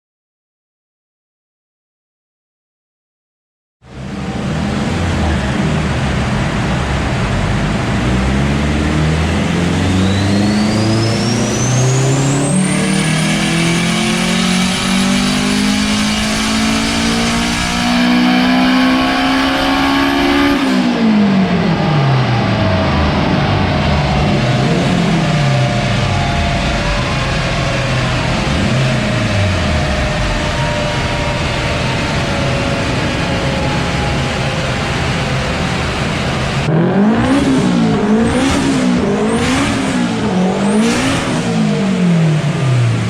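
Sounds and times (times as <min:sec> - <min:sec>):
car engine revving under load: 0:03.9 - 0:43.0
high turbo whistle: 0:09.7 - 0:21.0, 0:21.6 - 0:41.5.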